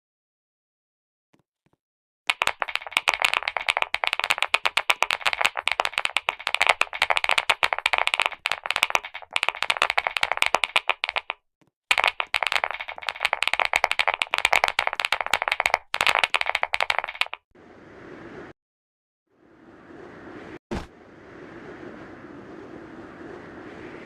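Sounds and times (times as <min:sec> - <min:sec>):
mechanical keyboard typing: 0:02.3 - 0:17.4.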